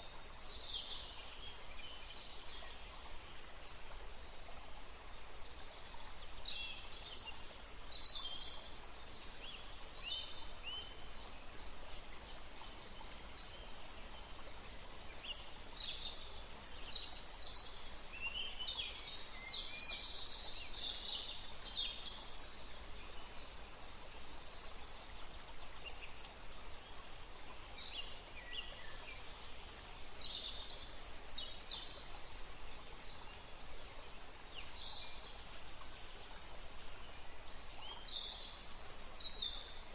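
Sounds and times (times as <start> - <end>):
low steady hiss: 0.0 - 39.9.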